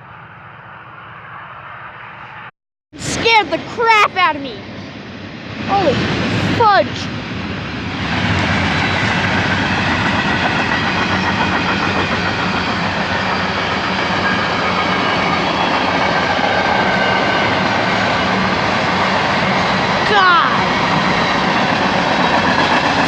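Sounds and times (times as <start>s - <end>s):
train wheels rattling on rails: 6.9s - 23.0s.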